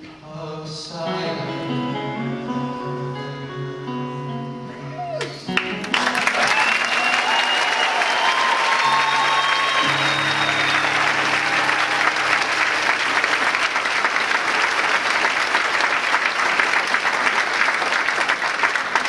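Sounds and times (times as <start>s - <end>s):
audience applauding: 5.2s - 19.0s.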